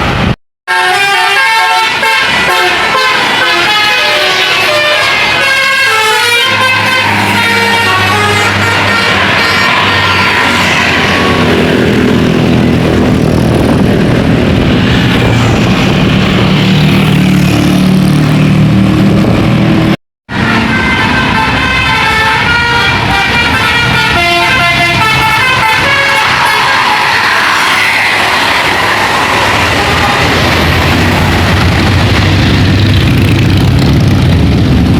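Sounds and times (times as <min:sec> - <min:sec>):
bus diesel engine: 0:00.0 - 0:34.9
multi-tone air horn tune: 0:00.7 - 0:11.6, 0:20.3 - 0:28.4.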